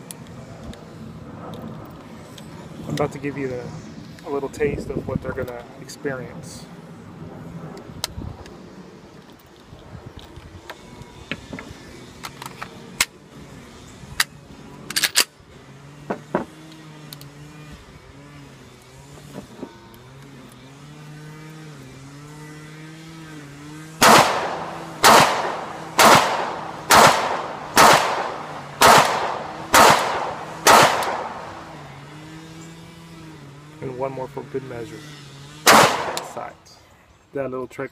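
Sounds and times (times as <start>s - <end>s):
gun handling clicks: 12.2s - 13.2s, 14.2s - 15.3s, 24.0s - 31.6s, 35.7s - 36.4s
loud pistol shots: 24.0s - 31.7s, 35.7s - 36.5s.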